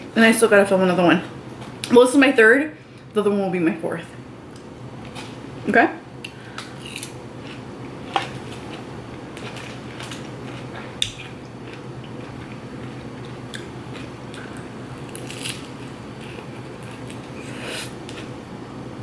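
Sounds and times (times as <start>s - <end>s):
chewing and crunching food: 6.6s - 18.4s.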